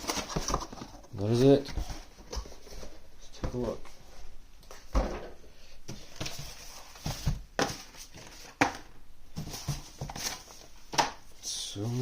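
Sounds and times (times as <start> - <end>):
cardboard packaging rustling: 0.0 - 3.8, 5.9 - 10.8.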